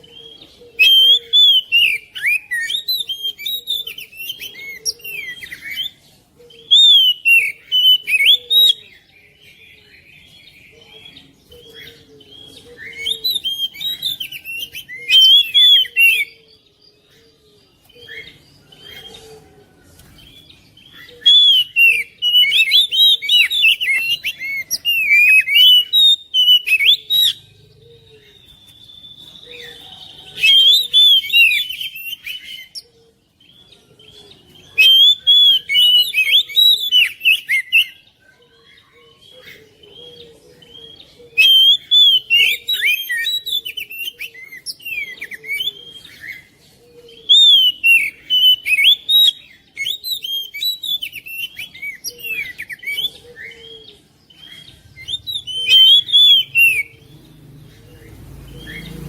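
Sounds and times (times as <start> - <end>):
bird singing whistled phrases: 0.0 - 6.0, 6.6 - 9.0, 11.2 - 16.4, 20.9 - 32.9, 34.7 - 38.0, 40.8 - 46.5, 47.2 - 57.0
bird twittering: 20.3 - 38.0, 38.8 - 59.0.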